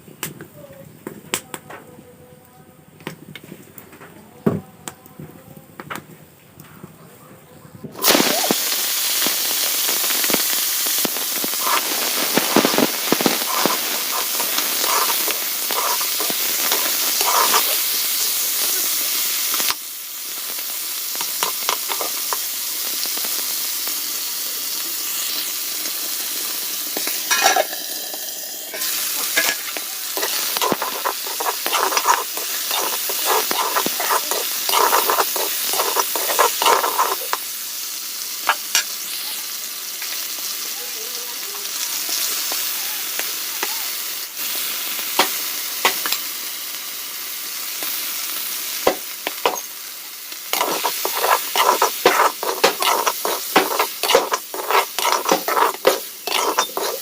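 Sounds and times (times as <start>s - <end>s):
food sizzling in oil: 8.0s - 57.0s
spatula scraping a pan: 11.6s - 18.0s, 21.2s - 22.4s, 28.7s - 37.4s, 49.3s - 49.7s, 50.5s - 57.0s.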